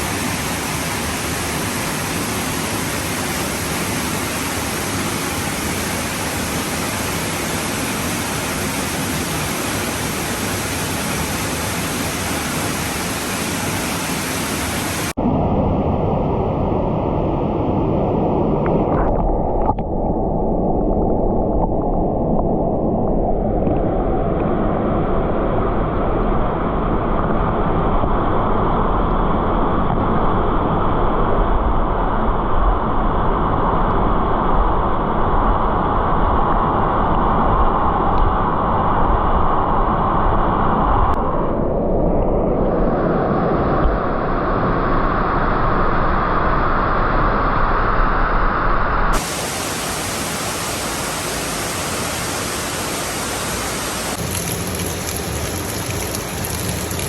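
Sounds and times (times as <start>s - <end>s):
waterfall rushing: 0.0s - 15.2s, 49.2s - 57.0s.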